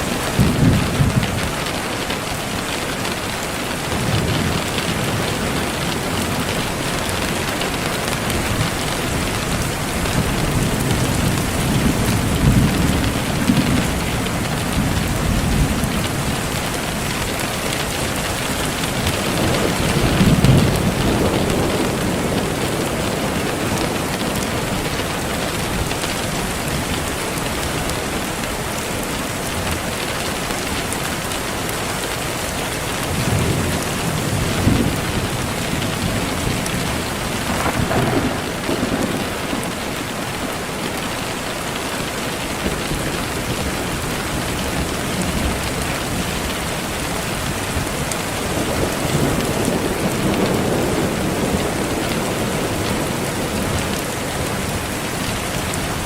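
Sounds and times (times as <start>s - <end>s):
steady rain falling: 0.0s - 56.0s
low thunder rolling: 33.1s - 41.2s.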